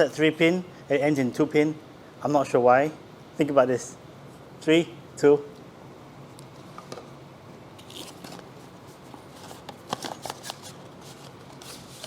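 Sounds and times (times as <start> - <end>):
cable rustling: 7.8 - 12.0.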